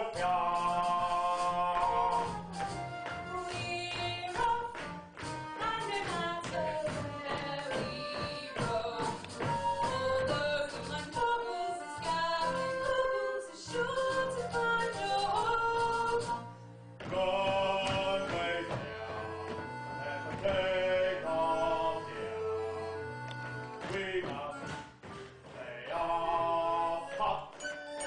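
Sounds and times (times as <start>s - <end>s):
cast singing with accompaniment: 0.0s - 2.7s, 17.0s - 28.0s.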